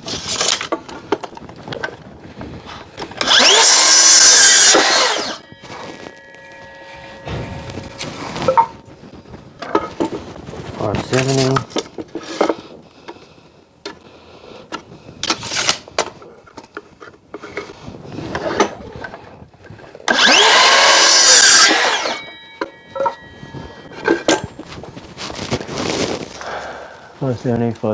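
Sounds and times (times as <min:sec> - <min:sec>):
power saw cutting timber: 0:03.0 - 0:08.8, 0:20.0 - 0:24.5
saw blade whining: 0:03.0 - 0:10.2, 0:19.9 - 0:25.0.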